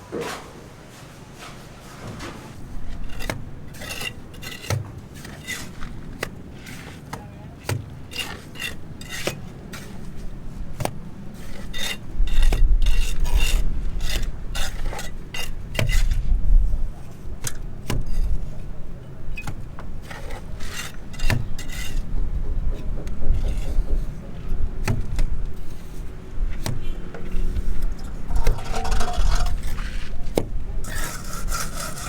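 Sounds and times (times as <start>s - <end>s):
metal scraping and clinking: 2.1s - 7.0s, 27.9s - 30.2s, 30.8s - 32.0s.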